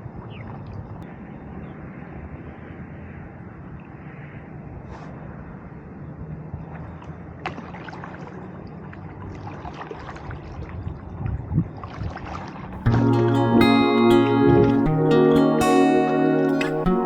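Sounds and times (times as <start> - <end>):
paddle splashing water: 7.5 - 10.6.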